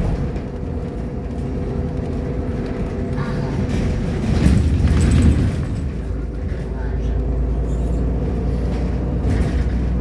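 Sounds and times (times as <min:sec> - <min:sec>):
rattling: 0:00.0 - 0:06.8
bus engine rumble: 0:00.0 - 0:10.0.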